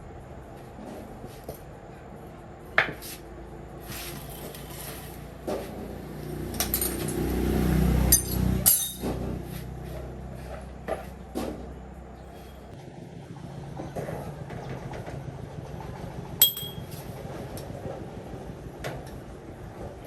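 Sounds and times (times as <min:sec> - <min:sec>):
metal tools clinking and knocking: 0:06.5 - 0:07.3, 0:08.1 - 0:09.2, 0:16.4 - 0:17.1.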